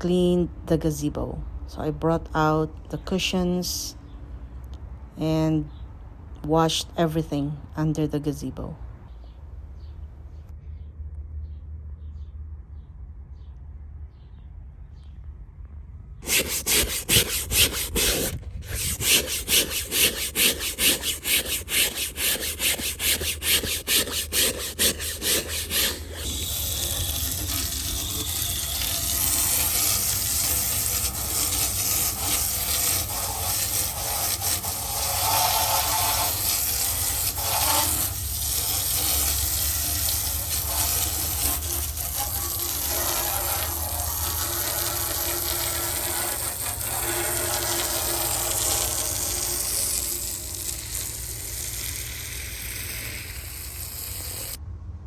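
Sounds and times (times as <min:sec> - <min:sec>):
scrubbing brush strokes: 0:16.2 - 0:54.6.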